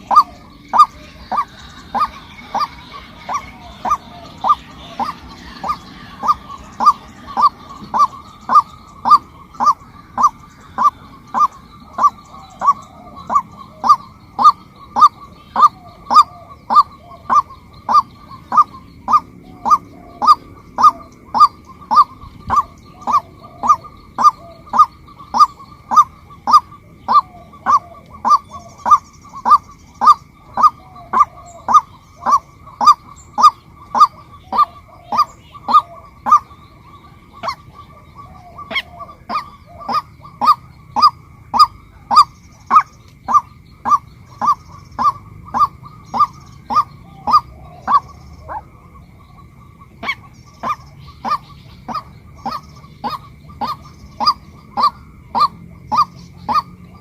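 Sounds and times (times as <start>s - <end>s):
waterhen honking calls: 0.0s - 57.0s.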